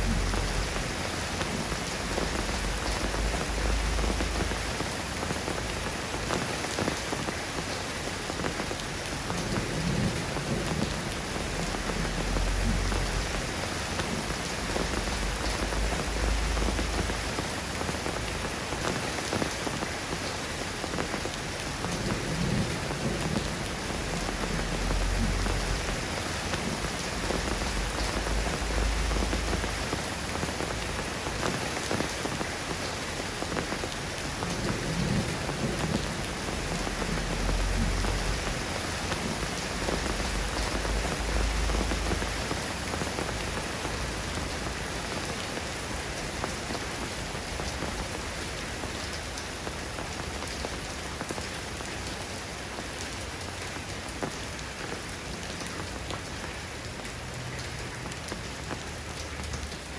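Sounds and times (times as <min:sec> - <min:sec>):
low rumbles: 0:00.0 - 0:05.0, 0:10.1 - 0:18.7, 0:22.5 - 0:31.2, 0:34.5 - 0:44.8
steady rain hiss: 0:00.0 - 0:59.9.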